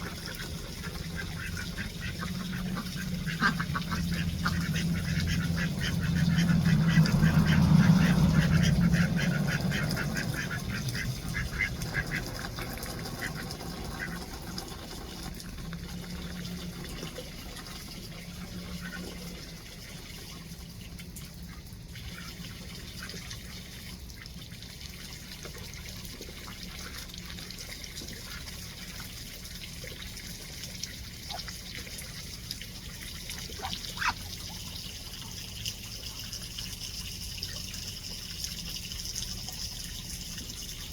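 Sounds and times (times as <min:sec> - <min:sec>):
ducks quacking: 0:00.0 - 0:14.5, 0:33.6 - 0:34.3
splashing in water: 0:00.0 - 0:21.2, 0:22.0 - 0:40.9.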